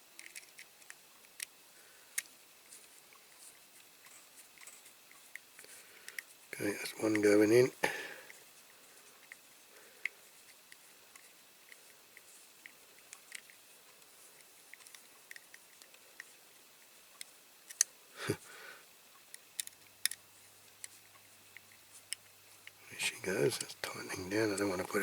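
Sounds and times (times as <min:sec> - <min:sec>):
faint metal clicks and scrapes: 0:00.0 - 0:06.4, 0:08.3 - 0:17.9.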